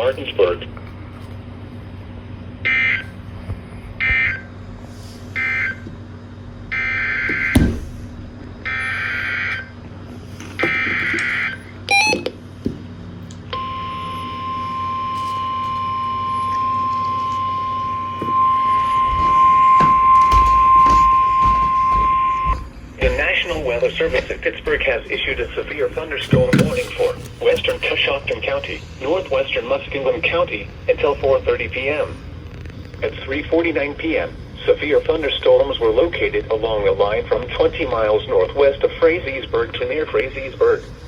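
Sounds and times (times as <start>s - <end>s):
steady single-pitch alarm tone: 5.4s - 5.8s, 10.6s - 12.4s, 13.5s - 22.6s
data tone bursts: 11.4s - 12.3s.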